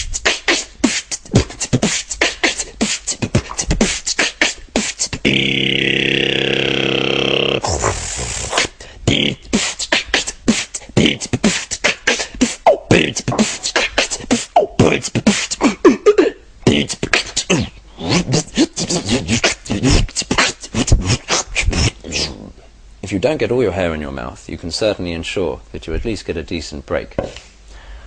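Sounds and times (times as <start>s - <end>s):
beatboxed drum sounds: 0.0s - 22.4s
steady hiss: 7.5s - 28.0s.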